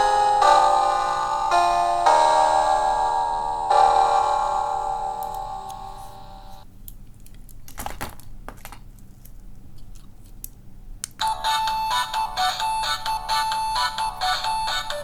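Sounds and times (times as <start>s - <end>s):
beeping electronic melody: 0.0s - 6.6s, 11.2s - 15.0s.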